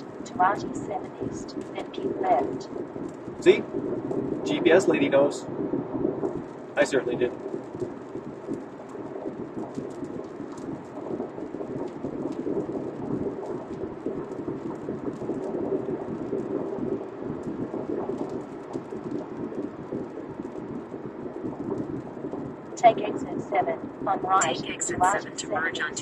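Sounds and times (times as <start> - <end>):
raindrops ticking: 0.0 - 5.1, 6.2 - 26.0
rain on a car: 0.0 - 26.0.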